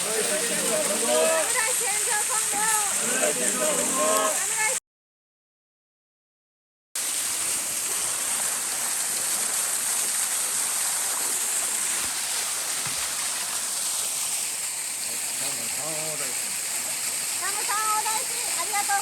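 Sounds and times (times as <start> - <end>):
waterfall rushing: 0.0 - 4.8.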